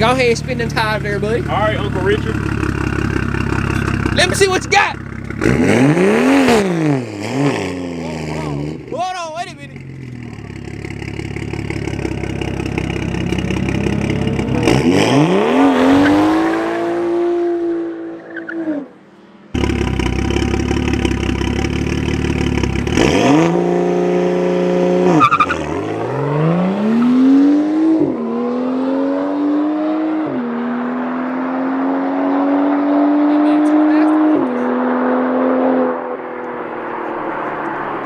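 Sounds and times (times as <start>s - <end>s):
car engine revving and accelerating: 0.0s - 8.9s, 9.7s - 38.0s.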